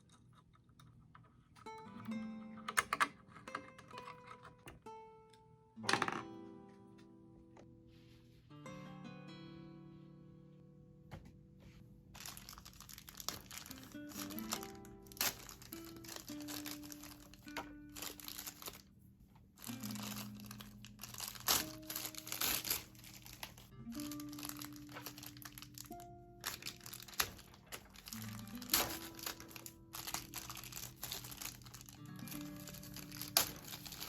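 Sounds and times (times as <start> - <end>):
soft background music: 1.6 - 34.0
packaging crinkling and rustling: 12.2 - 34.0.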